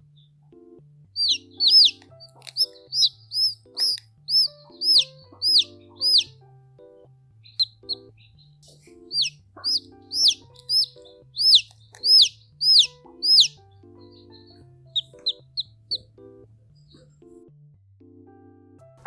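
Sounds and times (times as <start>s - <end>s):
faint music with steady beat: 0.0s - 19.0s
chick peeping: 1.2s - 6.4s, 7.4s - 16.1s.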